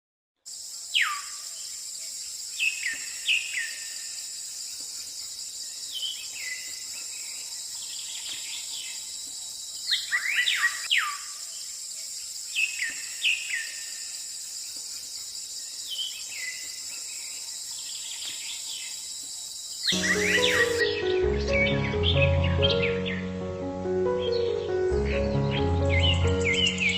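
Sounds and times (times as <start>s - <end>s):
insect chorus: 0.4s - 21.2s
birds whistling: 20.0s - 21.1s
music: 20.0s - 26.9s.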